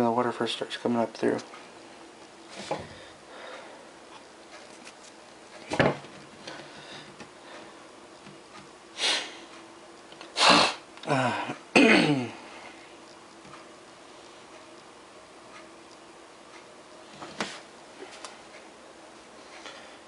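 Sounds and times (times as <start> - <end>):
man sniffing: 9.0 - 9.4, 10.3 - 11.6
man clearing his throat: 10.4 - 12.4.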